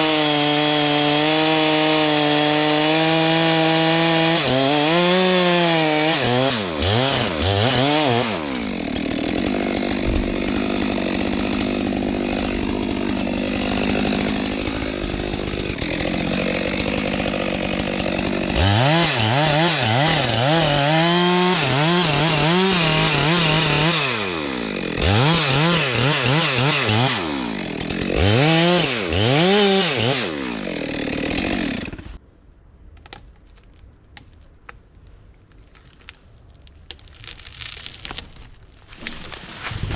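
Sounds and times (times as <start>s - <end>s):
chainsaw revving and cutting: 0.0s - 32.2s.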